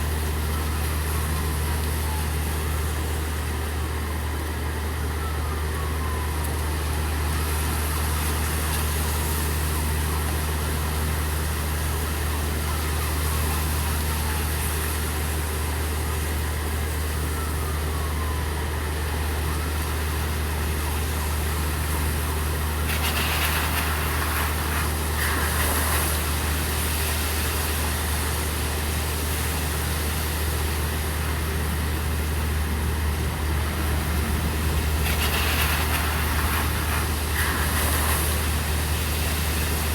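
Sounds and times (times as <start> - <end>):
steady rain: 0.0 - 39.9
truck engine idling: 19.1 - 39.9
tyres hissing through water: 22.5 - 27.0, 33.8 - 39.9.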